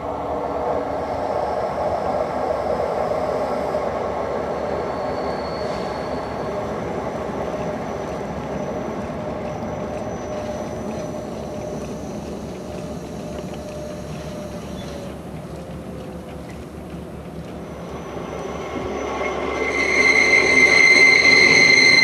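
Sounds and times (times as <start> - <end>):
train rolling rumble: 0.0 - 22.0
high-pitched wheel squeals: 4.6 - 15.2, 17.8 - 22.0.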